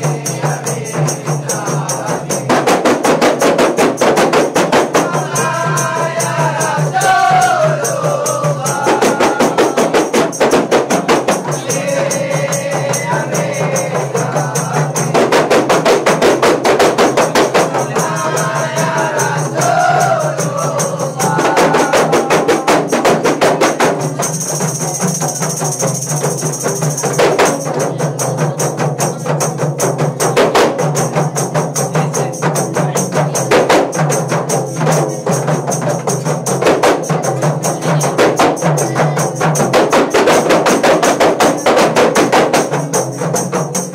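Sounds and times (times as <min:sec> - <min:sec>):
frame drums playing fast beat: 0:00.0 - 0:43.9
voices singing or chanting: 0:00.0 - 0:43.9.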